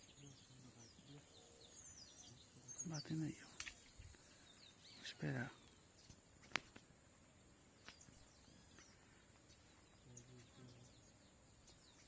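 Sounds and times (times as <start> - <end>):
faint bird chirps: 0.0 - 12.0.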